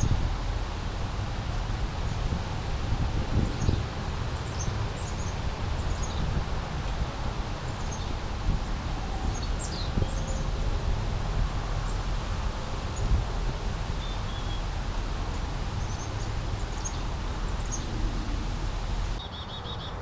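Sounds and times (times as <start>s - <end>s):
brook babbling: 7.2s - 19.2s
low rumble: 10.7s - 19.2s
high bird chirps: 13.9s - 19.5s.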